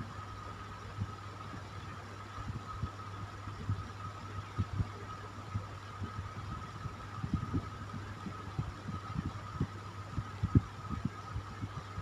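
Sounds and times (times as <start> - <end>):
electric fan humming: 0.0 - 12.0.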